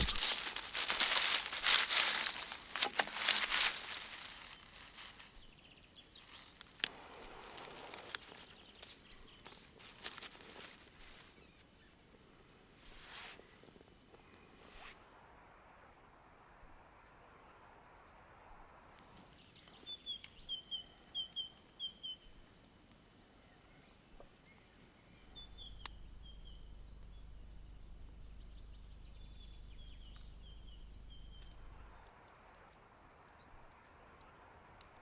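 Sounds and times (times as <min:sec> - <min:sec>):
songbird chirping: 0:00.0 - 0:12.7, 0:19.0 - 0:32.2
low steady rumble: 0:25.5 - 0:32.0.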